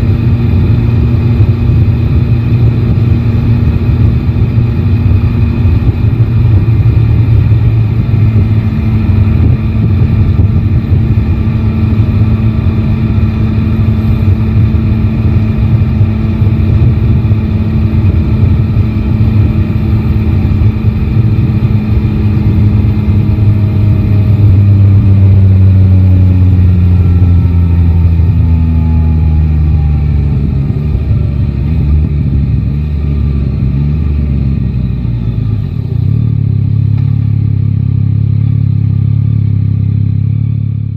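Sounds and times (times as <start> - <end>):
motorcycle engine rumbling: 0.0 - 40.9.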